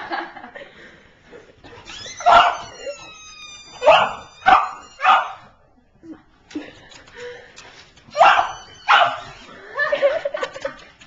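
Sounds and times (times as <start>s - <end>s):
dog barking: 2.2s - 2.7s, 3.8s - 5.5s, 8.2s - 9.2s.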